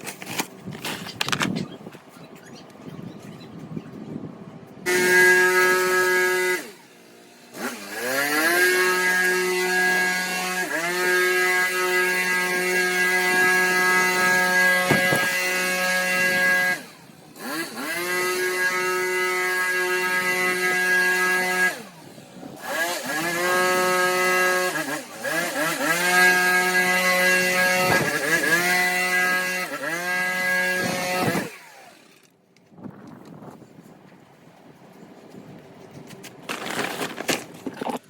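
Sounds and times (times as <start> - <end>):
power tool motor revving: 4.9 - 32.3.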